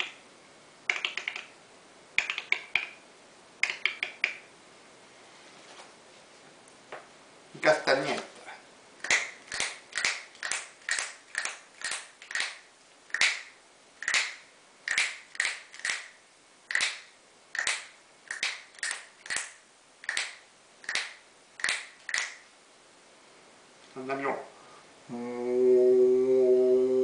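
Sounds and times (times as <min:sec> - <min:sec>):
person imitating castanets clicks: 0:00.9 - 0:01.6, 0:02.2 - 0:03.0, 0:03.6 - 0:04.5, 0:09.0 - 0:22.4.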